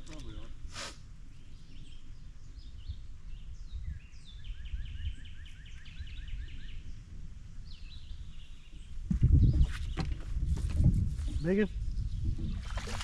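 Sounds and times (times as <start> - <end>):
birds chirping: 1.2 - 10.4.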